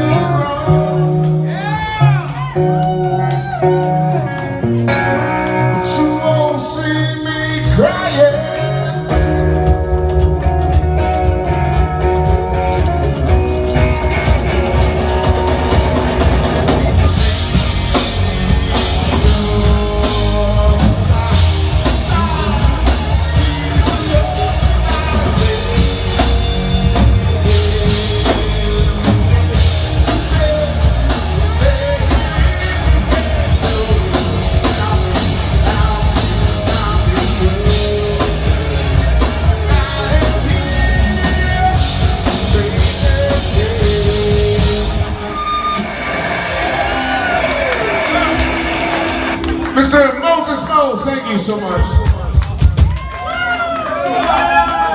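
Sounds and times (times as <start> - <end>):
drum kit: 0.0 - 50.8, 51.8 - 54.9
bass guitar: 0.0 - 54.9
electric guitar: 0.0 - 54.9.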